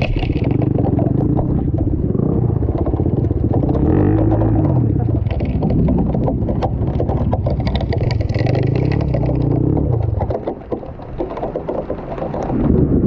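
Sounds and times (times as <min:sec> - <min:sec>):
motorcycle engine revving: 0:00.0 - 0:10.2
short knocks and rattles: 0:00.0 - 0:13.0.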